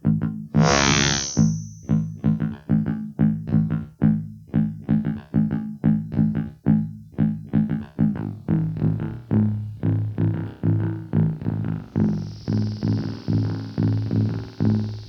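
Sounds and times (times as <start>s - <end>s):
quick repeating flanged notes: 0.6s - 2.0s.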